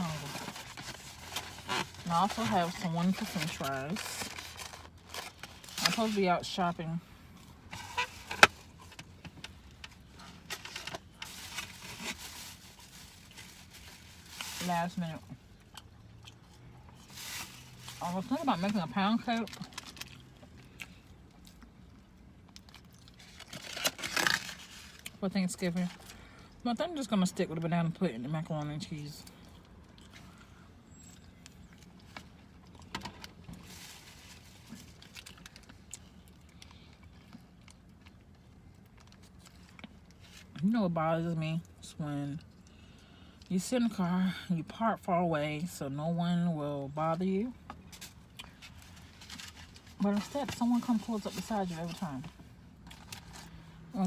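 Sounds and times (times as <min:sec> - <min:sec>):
rustling: 0:00.0 - 0:06.2, 0:07.7 - 0:15.0
low steady hum: 0:00.0 - 0:54.0.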